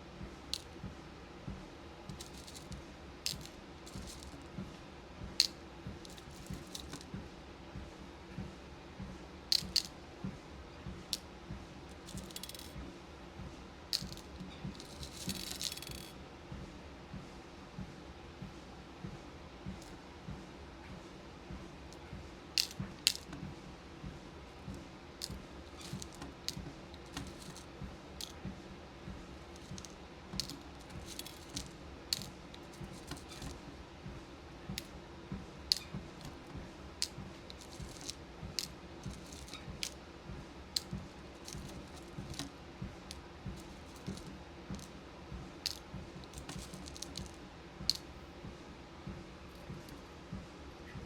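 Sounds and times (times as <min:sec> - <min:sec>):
beads clicking and rattling: 0:00.5 - 0:00.8, 0:02.1 - 0:04.4, 0:05.4 - 0:07.1, 0:09.5 - 0:09.9, 0:11.9 - 0:12.8, 0:14.0 - 0:16.2, 0:22.6 - 0:23.3, 0:25.2 - 0:28.4, 0:29.5 - 0:33.6, 0:35.7 - 0:40.0, 0:40.8 - 0:44.9, 0:45.6 - 0:48.2.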